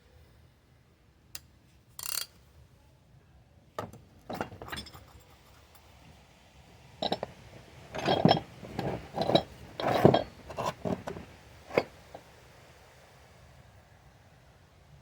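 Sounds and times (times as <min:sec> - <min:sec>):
hand tools clinking on metal: 0:04.3 - 0:05.4, 0:07.0 - 0:12.2.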